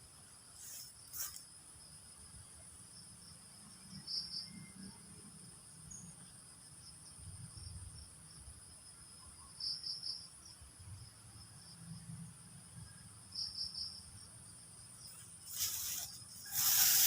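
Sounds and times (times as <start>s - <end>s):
insect chirps: 0.0s - 17.0s
insects trilling: 0.3s - 17.0s.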